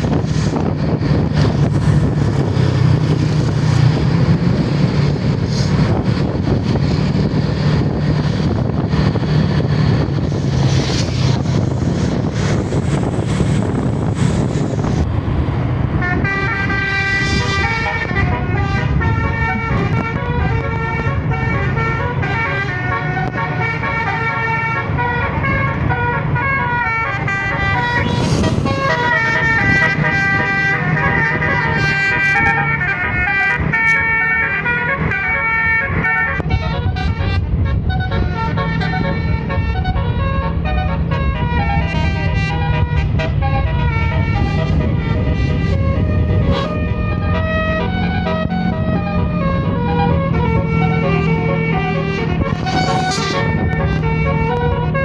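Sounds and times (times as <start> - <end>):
whoosh of noise: 0.0 - 16.0, 27.6 - 30.4
bus engine running: 0.0 - 55.0
road or wind noise: 0.0 - 55.0
multi-tone bus horn melody: 15.8 - 55.0.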